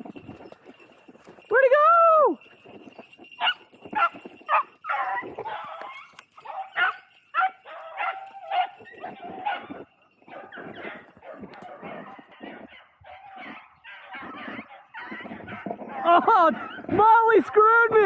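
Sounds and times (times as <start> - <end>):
dogs yelping barks: 2.9 - 17.0.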